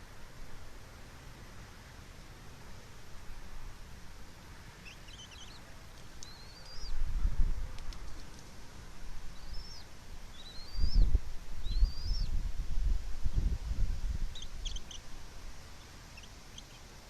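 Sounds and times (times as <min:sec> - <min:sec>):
faint steady hiss: 0:00.0 - 0:17.0
eaglets peeping: 0:04.8 - 0:07.0, 0:09.3 - 0:12.4, 0:14.2 - 0:15.1, 0:15.7 - 0:16.9.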